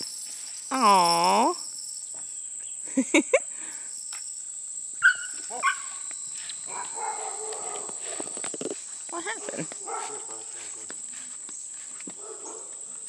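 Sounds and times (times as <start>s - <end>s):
dog yelping: 5.0s - 6.0s, 6.7s - 8.0s.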